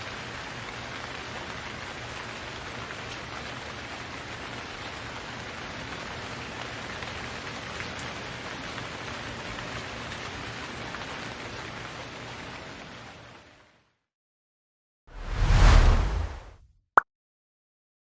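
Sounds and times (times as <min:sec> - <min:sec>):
rain falling on a surface: 0:00.0 - 0:14.0.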